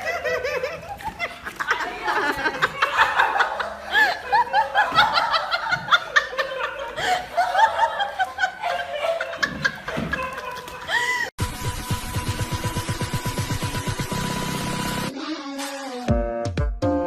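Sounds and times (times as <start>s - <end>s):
person chuckling: 0.0s - 11.3s
background music: 11.4s - 17.0s.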